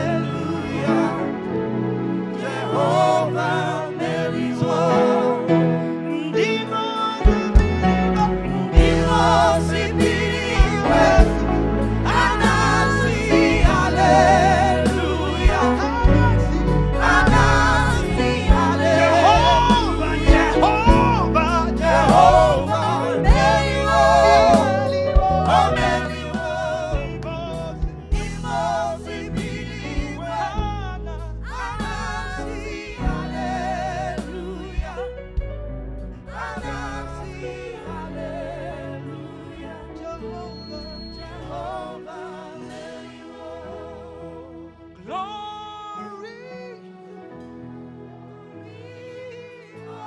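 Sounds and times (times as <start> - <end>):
gospel singing with band: 0.0 - 50.0.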